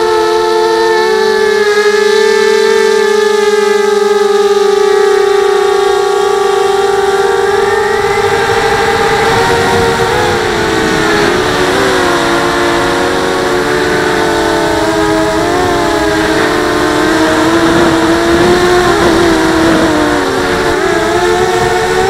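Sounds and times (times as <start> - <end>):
drone motors whining: 0.0 - 22.0
propeller wash rushing: 0.0 - 22.0.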